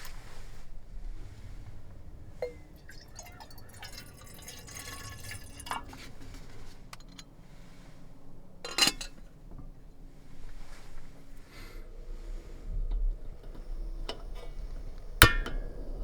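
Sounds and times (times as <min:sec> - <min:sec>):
drink pouring into glass: 0:02.4 - 0:06.0.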